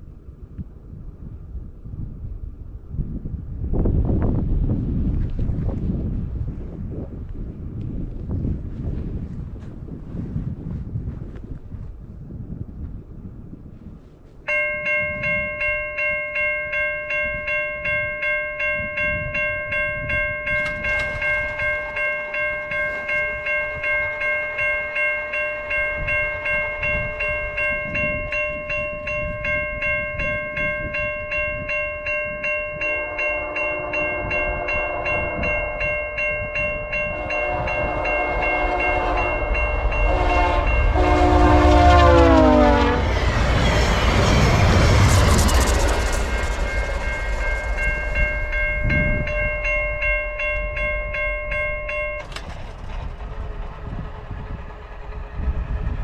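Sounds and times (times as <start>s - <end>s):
train rumble: 0.0s - 56.0s
level crossing bell ringing: 14.5s - 53.0s
locomotive horn blasts: 32.7s - 45.0s.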